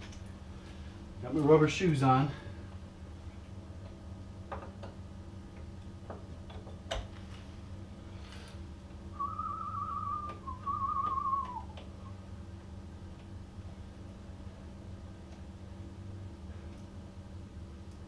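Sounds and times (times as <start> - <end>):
low steady hum: 0.0 - 18.0
man whistling warbling notes: 9.2 - 11.8.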